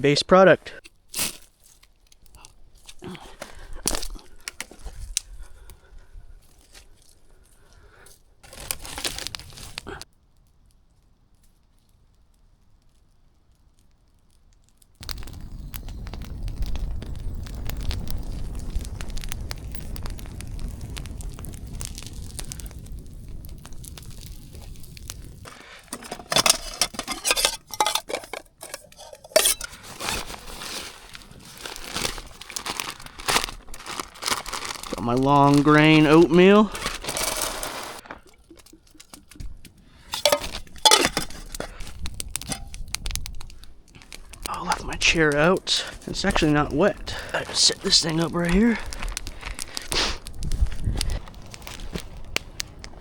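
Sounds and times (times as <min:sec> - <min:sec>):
low rumble with crackles: 0:00.7 - 0:53.0
plastic food packet crinkling: 0:00.9 - 0:05.9, 0:06.5 - 0:10.0, 0:25.4 - 0:53.0.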